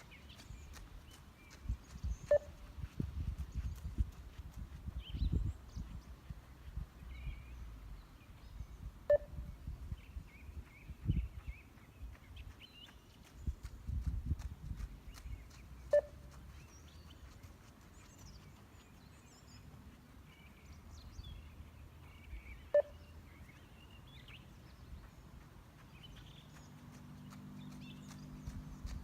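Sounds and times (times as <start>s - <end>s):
birds chirping softly: 0.0s - 29.0s
short beeps: 2.3s - 2.6s, 9.1s - 9.5s, 15.9s - 16.2s, 22.7s - 23.0s.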